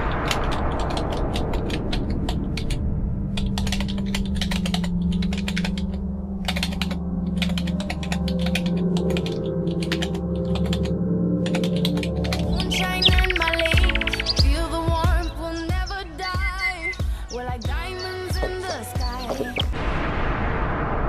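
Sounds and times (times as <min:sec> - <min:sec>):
low hum: 0:00.0 - 0:21.0
rapid sharp clicks: 0:00.1 - 0:14.6.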